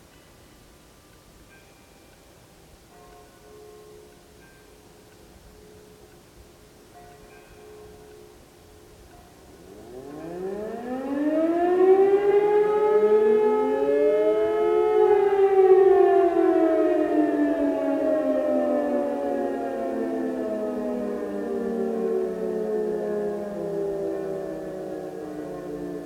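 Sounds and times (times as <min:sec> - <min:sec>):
civil defence sirens wailing: 0:08.1 - 0:26.0.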